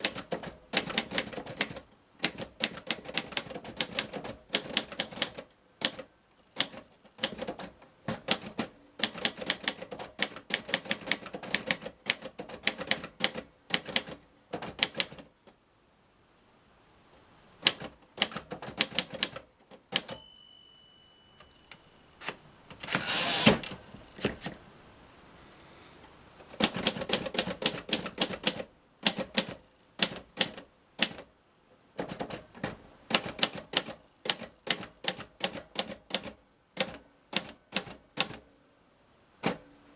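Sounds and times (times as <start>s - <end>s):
typewriter carriage return: 0.0s - 15.2s, 17.6s - 20.2s, 22.2s - 24.5s, 26.5s - 31.2s
typewriter bell ringing: 20.0s - 22.0s.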